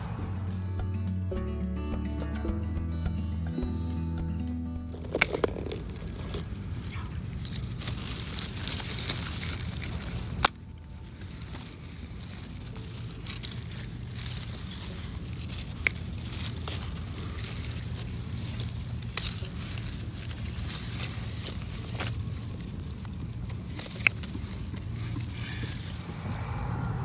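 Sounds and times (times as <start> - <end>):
steady low rumble: 0.0 - 1.4, 4.6 - 27.0
leaves rustling and crackling: 4.9 - 27.0.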